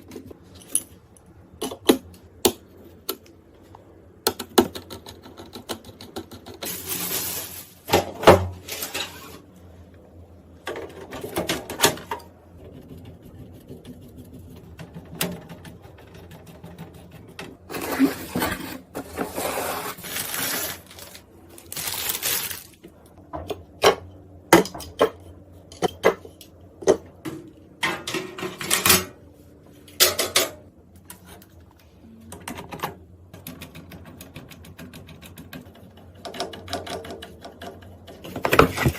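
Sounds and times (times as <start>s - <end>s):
computer parts clicking and tapping: 4.2s - 6.7s, 32.2s - 38.9s.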